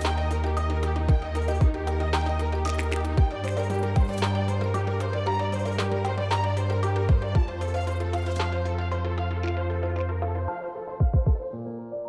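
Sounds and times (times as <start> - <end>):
background music with drum beat: 0.0 - 0.4, 1.1 - 4.6, 5.8 - 7.7, 11.0 - 11.5.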